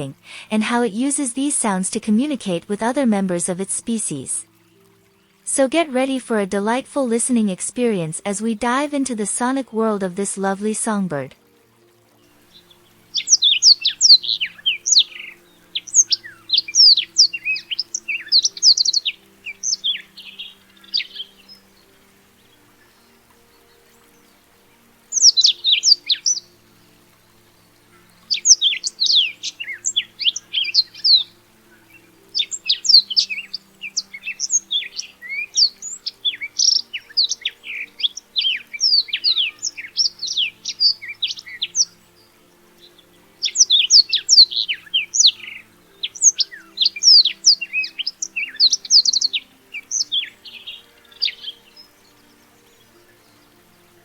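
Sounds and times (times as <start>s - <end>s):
canary singing: 0.0s - 11.4s, 12.3s - 54.0s.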